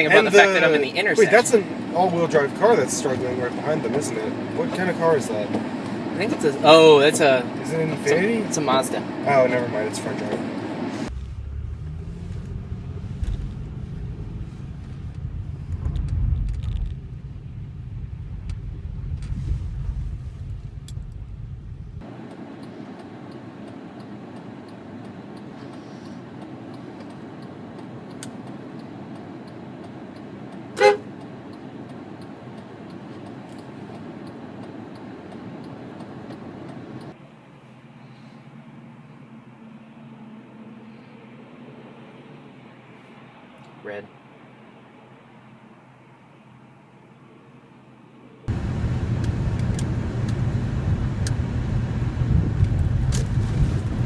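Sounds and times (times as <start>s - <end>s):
car engine and road noise: 0.0s - 54.0s
car horn toot: 30.8s - 31.1s.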